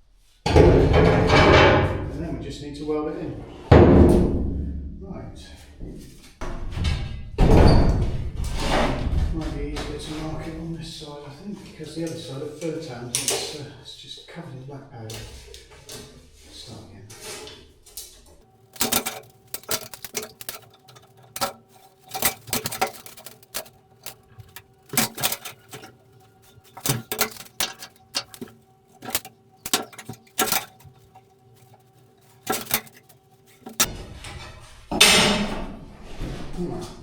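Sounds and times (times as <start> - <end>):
rustling scrape: 18.5 - 34.8
tools clicking on steel plate: 18.8 - 33.9.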